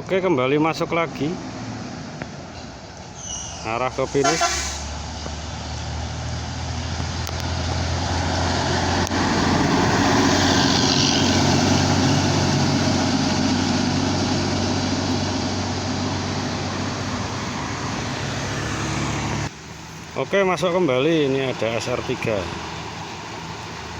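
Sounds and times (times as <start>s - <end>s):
bus diesel engine: 0.0s - 23.9s.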